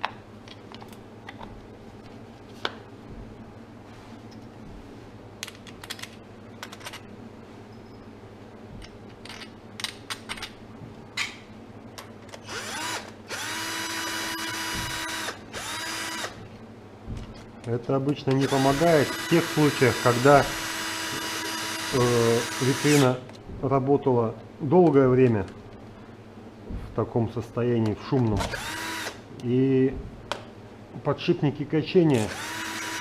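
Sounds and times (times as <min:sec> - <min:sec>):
small parts clicking and knocking: 0:05.4 - 0:07.0, 0:08.7 - 0:10.6
power screwdriver whining: 0:12.4 - 0:16.4, 0:18.4 - 0:23.2, 0:28.4 - 0:29.2, 0:32.1 - 0:33.0.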